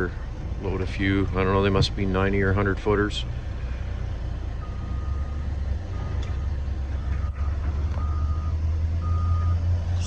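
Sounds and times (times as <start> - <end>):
diesel engine droning: 0.0 - 10.0
backup alarm beeping: 4.6 - 9.7.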